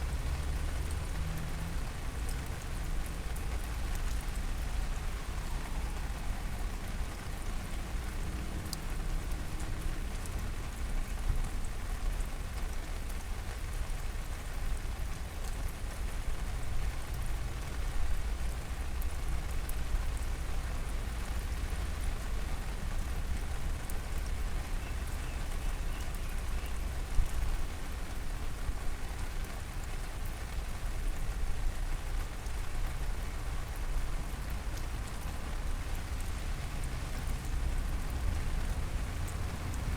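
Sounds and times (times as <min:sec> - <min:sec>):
steady rain hiss: 0:00.0 - 0:39.9
rain drop ticks: 0:00.1 - 0:39.9.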